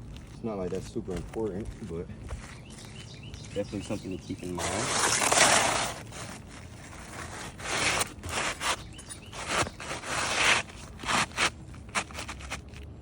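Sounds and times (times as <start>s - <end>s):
shingles scraping on roof: 3.9s - 12.8s.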